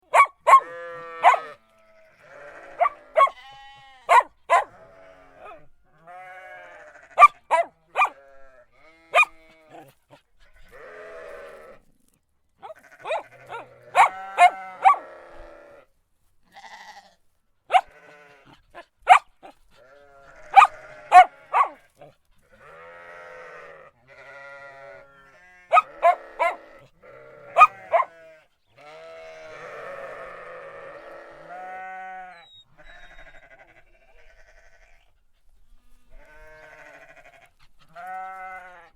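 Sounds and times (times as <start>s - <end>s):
dog barking: 0.0s - 1.6s, 2.6s - 3.4s, 4.1s - 4.8s, 5.4s - 5.7s, 7.2s - 8.2s, 9.1s - 10.0s, 12.6s - 15.1s, 17.7s - 18.0s, 18.7s - 19.6s, 20.4s - 22.2s, 25.7s - 26.8s, 27.5s - 28.2s
dog making longer calls: 0.2s - 1.6s, 2.6s - 3.4s, 12.6s - 15.4s, 17.7s - 22.3s, 25.7s - 28.2s.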